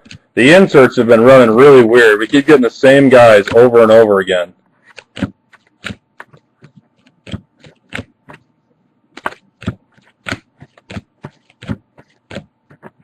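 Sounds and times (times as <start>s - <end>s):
cardboard cards snapping and tapping: 4.9s - 8.4s, 9.2s - 13.0s.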